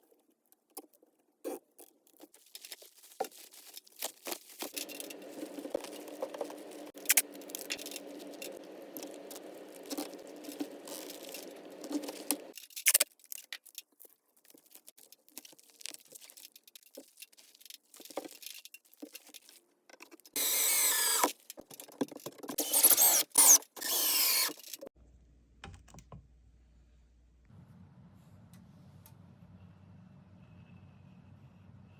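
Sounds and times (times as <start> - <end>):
handling clicks and knocks: 4.2 - 13.8, 21.2 - 24.9
power tool bursts: 20.4 - 21.3, 22.6 - 24.8.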